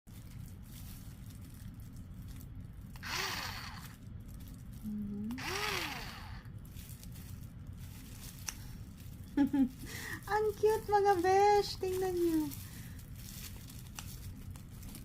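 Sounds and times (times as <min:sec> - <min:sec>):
steady low hum: 0:00.1 - 0:15.0
plastic mailer ripping: 0:00.3 - 0:09.3.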